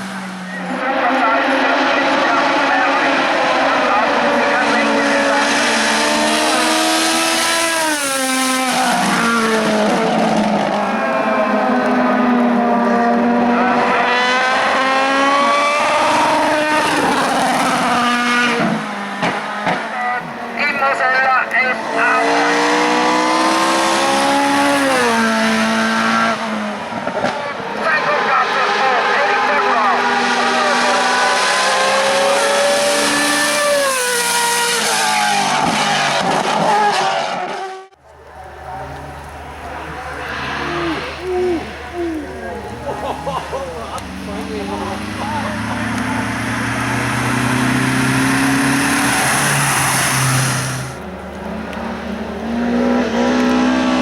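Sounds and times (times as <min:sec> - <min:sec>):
race car engine accelerating: 0:00.0 - 0:54.0.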